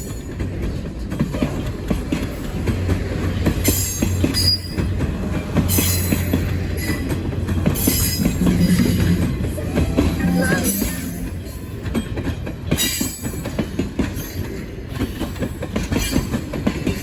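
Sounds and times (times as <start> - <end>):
train wheels clattering over rails: 0.0 - 17.0
high wheel squeals: 7.8 - 11.6
steady low drone: 8.0 - 11.4.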